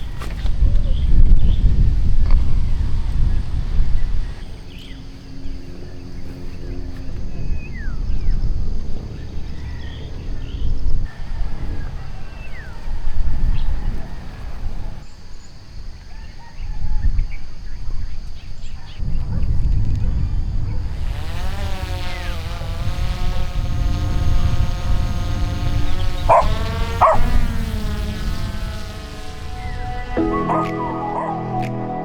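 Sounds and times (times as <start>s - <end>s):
wind rumbling on microphone: 0.0s - 30.8s
high-pitched wavering whine: 21.0s - 32.0s.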